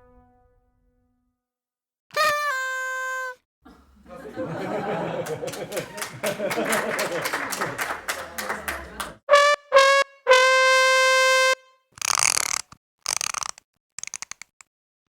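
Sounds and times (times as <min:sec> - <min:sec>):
sad trombone sting: 0:00.0 - 0:01.1.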